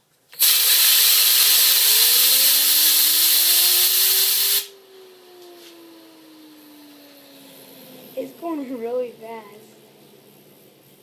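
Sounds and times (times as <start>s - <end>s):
compressed air hissing: 0.3s - 4.7s
fidget spinner whirring: 0.3s - 11.0s.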